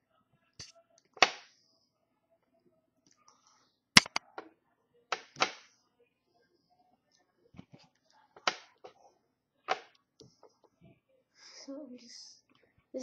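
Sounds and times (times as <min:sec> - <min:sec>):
slime popping and clicking: 0:04.0 - 0:04.2.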